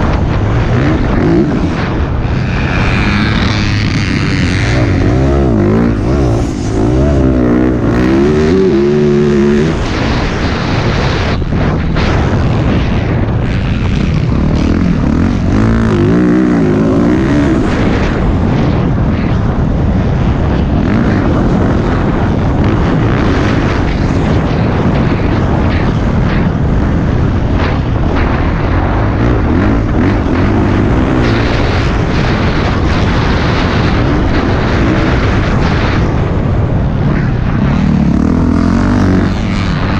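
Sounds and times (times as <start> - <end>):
dirt bike engine revving: 0.0 - 19.4, 20.0 - 36.4, 37.1 - 39.9.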